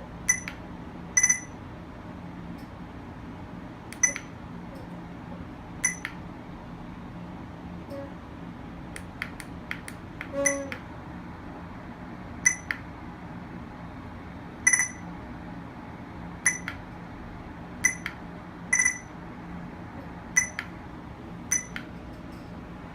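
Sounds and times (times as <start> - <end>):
electronic alert beeps: 1.2 - 1.6, 4.0 - 4.3, 12.5 - 12.7, 14.7 - 15.0, 16.5 - 16.7, 17.8 - 18.0, 18.8 - 19.1, 20.4 - 20.6, 21.5 - 21.8.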